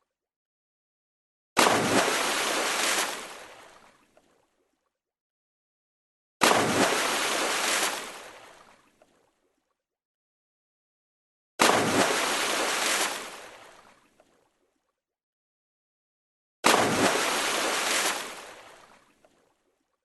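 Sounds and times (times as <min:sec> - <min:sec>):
water splash: 0:01.6 - 0:04.4, 0:06.4 - 0:09.3, 0:11.6 - 0:14.3, 0:16.6 - 0:19.6.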